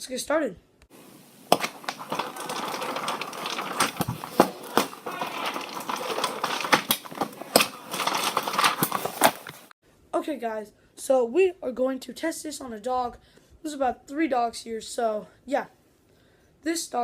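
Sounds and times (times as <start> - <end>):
rustling noise: 0.9 - 9.7
sharp clicks and knocks: 1.0 - 9.7.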